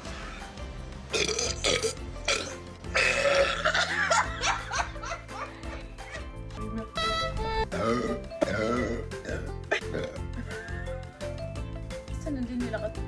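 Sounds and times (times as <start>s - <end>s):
background music: 0.0s - 13.0s
person burping loudly: 1.1s - 4.3s, 7.7s - 10.4s.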